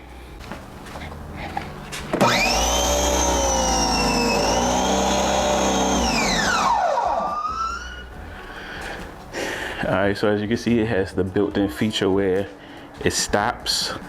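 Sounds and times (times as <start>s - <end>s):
pressure washer motor whining: 1.9s - 8.1s.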